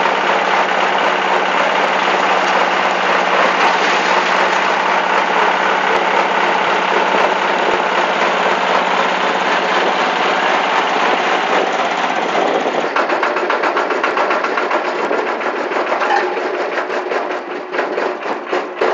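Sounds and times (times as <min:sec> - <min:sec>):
chopper machine engine humming: 0:00.0 - 0:14.8.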